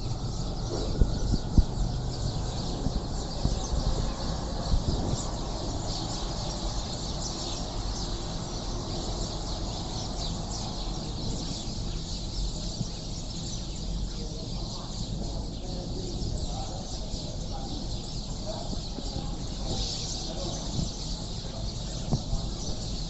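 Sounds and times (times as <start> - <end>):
small birds chirping: 0.0 - 23.0
steady low rumble: 0.0 - 23.0.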